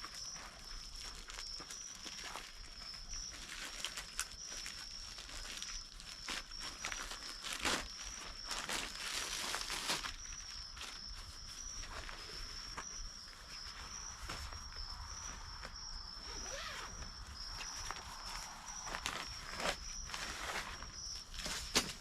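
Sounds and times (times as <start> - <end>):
crickets trilling: 0.0 - 22.0
rug rustling and scuffing: 0.0 - 22.0
footsteps: 11.3 - 22.0.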